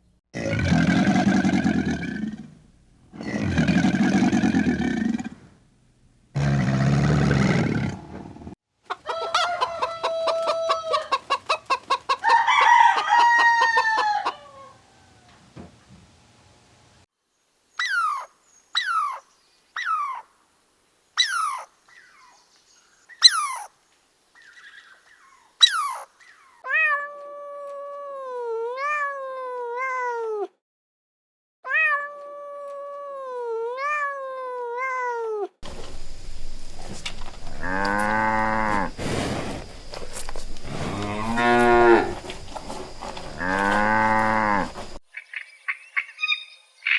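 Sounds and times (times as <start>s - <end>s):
low rough animal call: 35.6s - 45.0s
rapidly pulsed animal call: 35.6s - 45.0s
long wavering animal calls: 35.7s - 39.0s, 39.9s - 45.0s.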